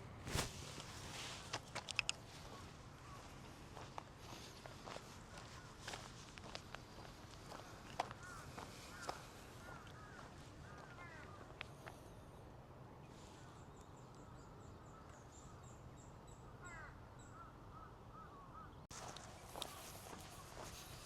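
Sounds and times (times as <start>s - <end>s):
high thin ticks: 1.5s - 2.4s
crows cawing faintly: 1.9s - 12.3s, 16.4s - 21.0s.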